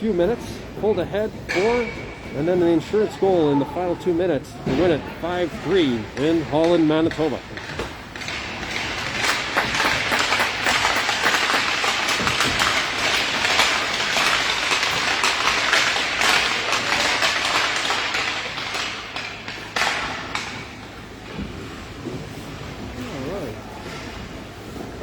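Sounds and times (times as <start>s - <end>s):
crowd applauding: 9.2s - 13.6s.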